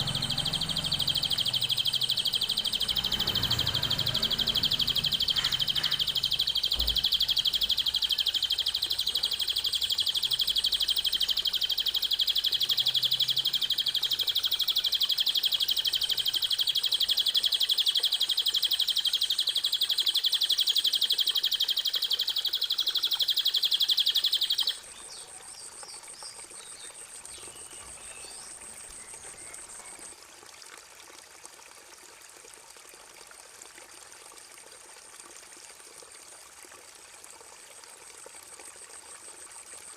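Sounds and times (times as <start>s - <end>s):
rapid high-pitched bird trill: 0.0s - 30.0s
faint bird chirps: 0.0s - 30.1s
water trickling: 0.0s - 39.9s.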